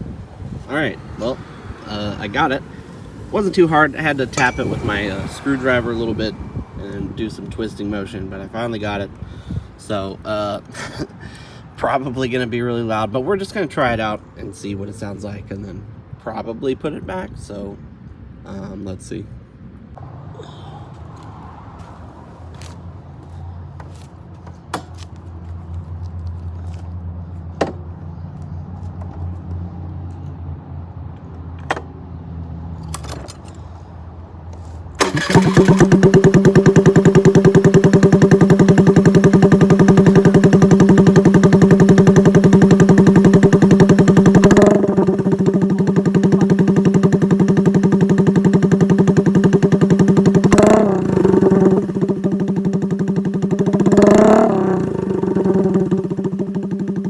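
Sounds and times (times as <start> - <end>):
low hum: 2.5 - 7.3
loud motorcycle engine running: 3.3 - 7.2, 35.0 - 57.0.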